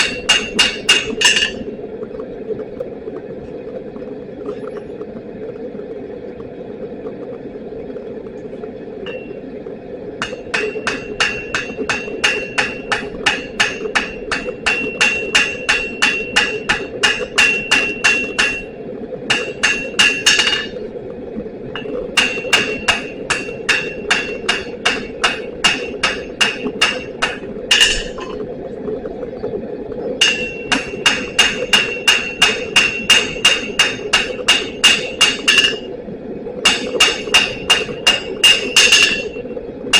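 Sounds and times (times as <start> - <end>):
hammer striking steel on anvil: 0.0 - 1.6, 10.2 - 18.7, 19.3 - 20.8, 21.8 - 28.4, 30.2 - 35.9, 36.7 - 39.4
steady hum: 0.0 - 39.9.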